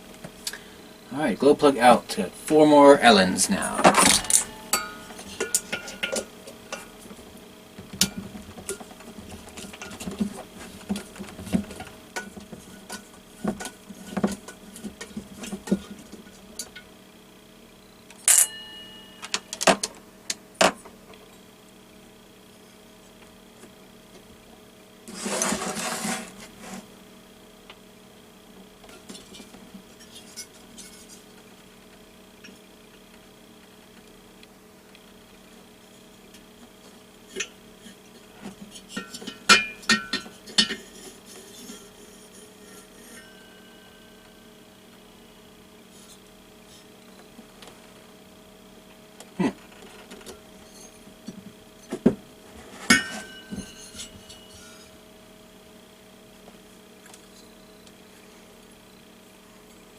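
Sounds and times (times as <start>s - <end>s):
faint steady hum: 0.0s - 59.9s
ringing metal clink: 4.4s - 6.0s, 18.3s - 19.4s, 52.9s - 54.8s
scraping rustle: 25.1s - 26.9s, 52.4s - 54.9s.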